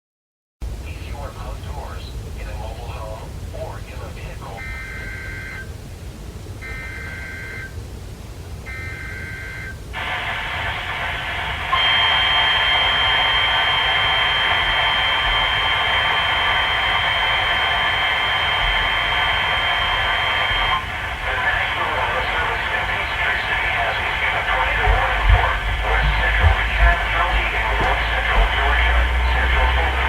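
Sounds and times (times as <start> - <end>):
data bursts: 4.2 - 5.8, 6.6 - 7.8, 11.6 - 30.0
rough warning alarm tone: 4.4 - 5.8, 6.6 - 7.8, 8.7 - 10.2, 21.8 - 30.0
hiss: 10.0 - 21.1.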